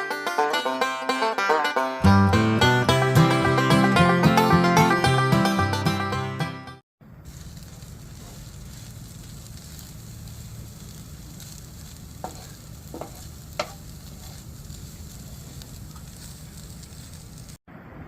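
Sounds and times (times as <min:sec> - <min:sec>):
food sizzling on a grill: 0:07.2 - 0:17.6.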